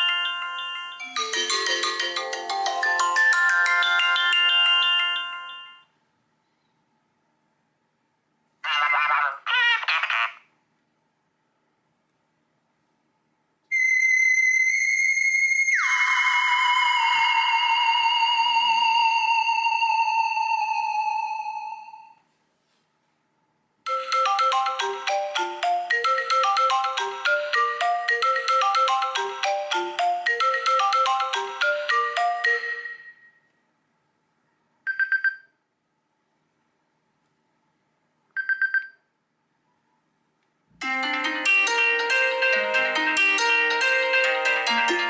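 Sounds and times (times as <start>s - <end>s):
high ringtone trills: 0.0s - 5.9s, 23.9s - 33.5s
ringtone melody: 0.0s - 5.9s, 23.9s - 33.4s, 40.8s - 45.0s.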